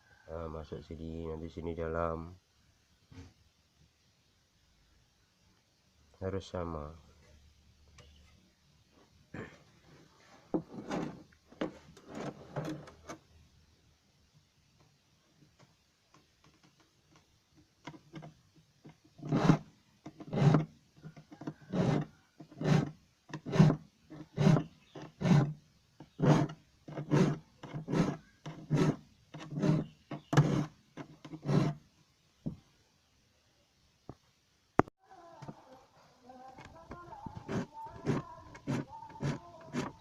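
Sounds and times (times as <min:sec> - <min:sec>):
file rasping on saw teeth: 0:19.2 - 0:19.6, 0:20.2 - 0:20.7, 0:21.5 - 0:31.8, 0:37.3 - 0:40.0.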